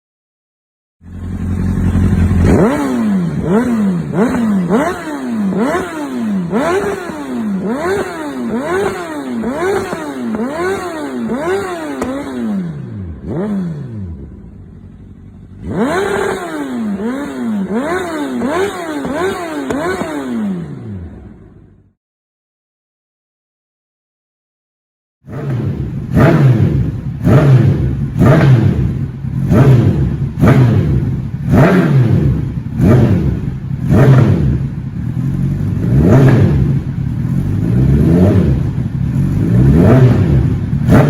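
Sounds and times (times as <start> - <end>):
motorcycle engine revving: 1.0 - 22.0, 25.2 - 41.0.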